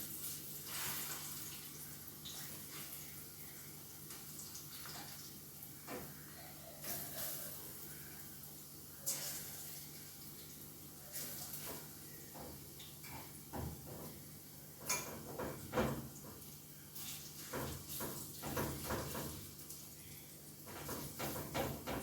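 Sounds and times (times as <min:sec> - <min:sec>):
faint steady hum: 0:00.0 - 0:17.2
utensils and pans clinking: 0:14.8 - 0:15.6.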